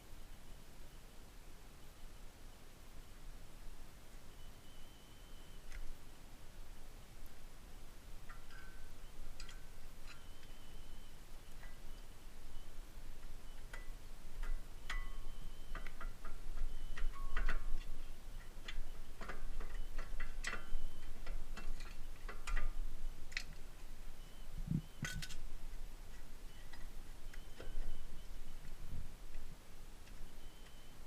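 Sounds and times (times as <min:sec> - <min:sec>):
metallic clicks of tools: 0:08.2 - 0:12.1, 0:13.2 - 0:23.7, 0:25.0 - 0:25.4.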